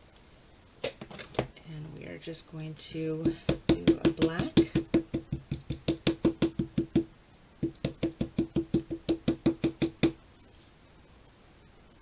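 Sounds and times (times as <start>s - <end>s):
stamp tapping on ink pad: 3.2s - 10.2s.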